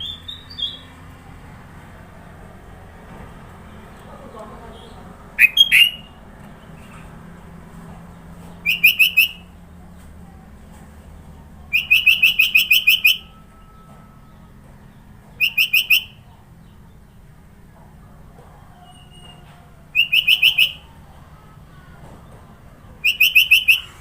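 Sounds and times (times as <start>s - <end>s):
bird singing rapid high notes: 4.8s - 6.2s, 8.6s - 9.5s, 11.7s - 13.4s, 15.3s - 16.2s, 20.0s - 20.9s, 23.0s - 24.0s.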